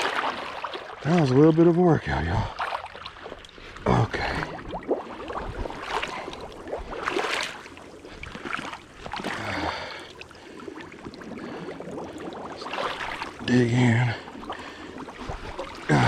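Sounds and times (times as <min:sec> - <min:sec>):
water splashing around legs: 0:00.0 - 0:16.0
creek water rushing: 0:11.4 - 0:16.0.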